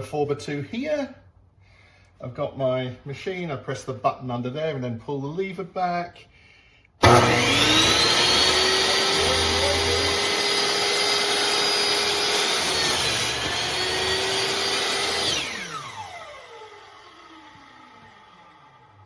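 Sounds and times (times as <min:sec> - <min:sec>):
miter saw cutting wood: 0:07.0 - 0:19.0
saw blade spinning down: 0:07.0 - 0:19.0.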